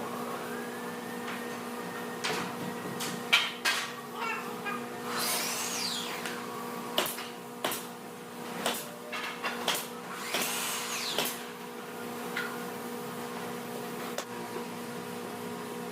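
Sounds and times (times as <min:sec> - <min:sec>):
power tool running: 0:04.9 - 0:07.3, 0:09.8 - 0:11.6
knocks of wood and tools: 0:07.0 - 0:07.9, 0:08.6 - 0:10.5.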